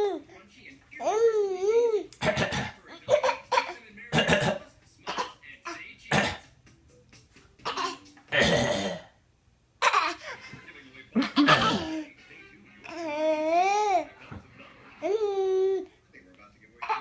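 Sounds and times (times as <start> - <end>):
child coughing: 2.2 - 5.4, 6.1 - 6.4, 7.6 - 9.0, 9.8 - 10.3, 11.2 - 12.0.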